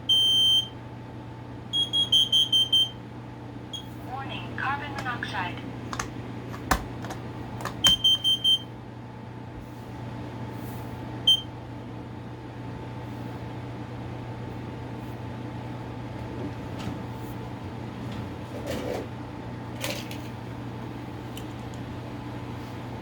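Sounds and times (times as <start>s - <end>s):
smoke alarm beep: 0.0s - 0.8s, 1.7s - 3.0s, 3.7s - 3.9s, 7.8s - 8.7s, 11.3s - 11.5s
steady low hum: 0.0s - 23.0s.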